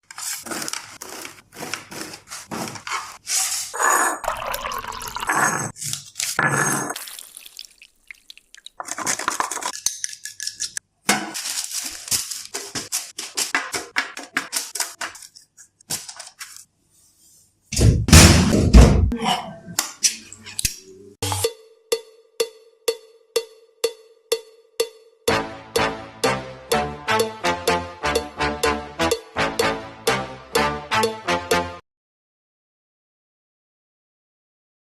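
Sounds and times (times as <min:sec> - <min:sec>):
scraping noises: 0:00.1 - 0:04.2.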